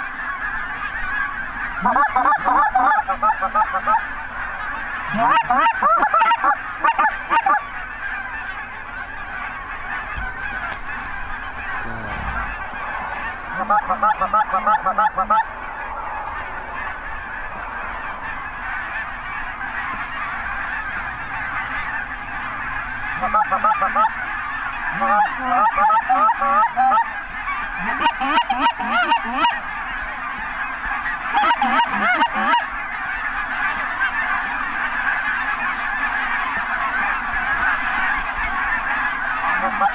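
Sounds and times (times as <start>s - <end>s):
close rapid honks and clucks: 0.0s - 39.9s
geese honking: 0.0s - 39.9s.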